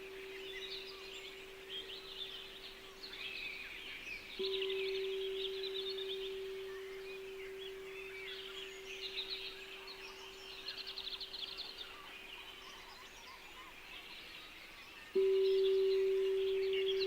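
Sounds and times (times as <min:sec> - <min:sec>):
steady low tone: 0:00.0 - 0:11.4, 0:15.2 - 0:17.0
songbirds chirping and trilling: 0:00.0 - 0:17.0.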